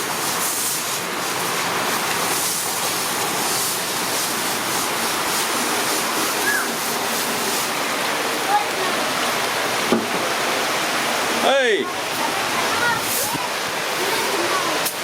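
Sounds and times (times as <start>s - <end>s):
rain on wet ground: 0.0s - 15.0s.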